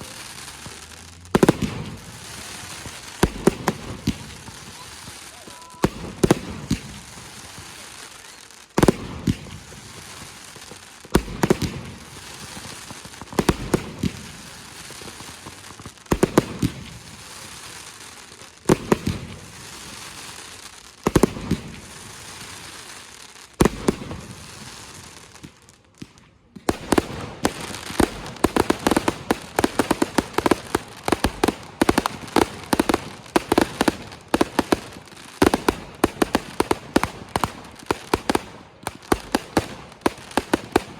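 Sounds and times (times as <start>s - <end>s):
firework bangs: 0.0s - 40.9s
fireworks crackling: 0.0s - 40.9s
rapid crackling pops: 25.4s - 40.9s.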